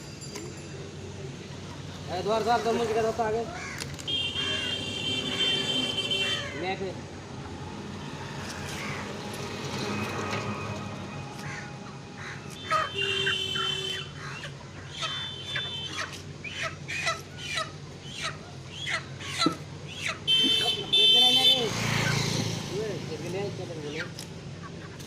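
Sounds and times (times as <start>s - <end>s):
chickens clucking: 11.4s - 20.7s, 23.9s - 25.0s.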